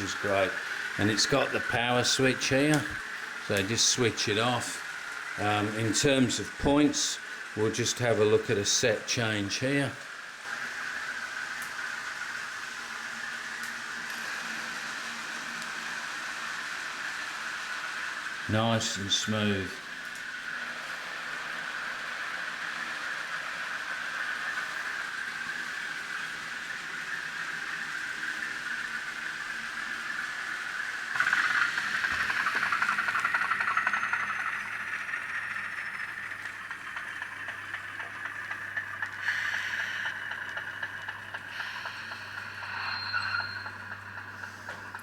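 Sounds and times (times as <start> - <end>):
tinny diesel engine drone from speaker: 0.0 - 10.0, 30.1 - 45.0
low hum: 27.6 - 45.0.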